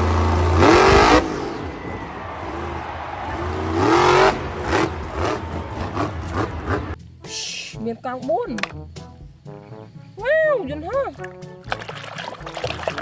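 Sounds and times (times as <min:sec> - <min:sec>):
vehicle engine revving: 0:00.0 - 0:07.1.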